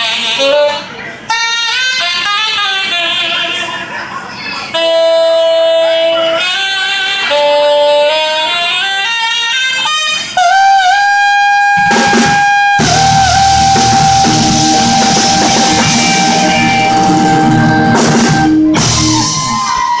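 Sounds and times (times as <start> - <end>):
long held high note: 4.7 - 20.0
drums: 10.3 - 20.0
bass guitar: 10.4 - 20.0.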